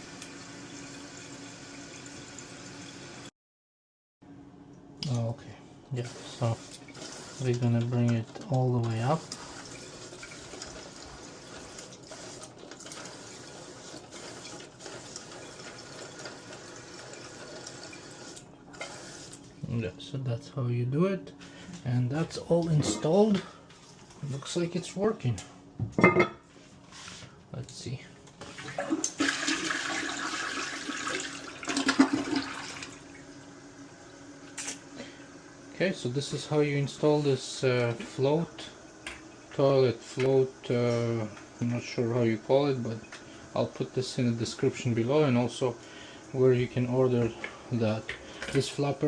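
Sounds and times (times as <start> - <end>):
toilet tank refilling with water: 0.0 - 3.3, 5.9 - 19.6, 28.4 - 49.0.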